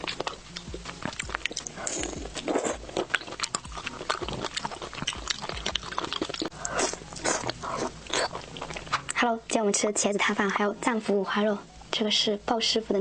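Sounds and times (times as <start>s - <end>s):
wet chewing with mouth clicks: 0.0s - 9.2s.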